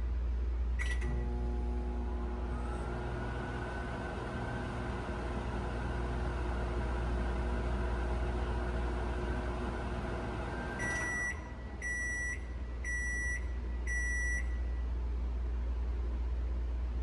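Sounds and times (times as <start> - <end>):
microwave oven humming: 0.8 - 14.9
microwave beeps: 2.5 - 14.7.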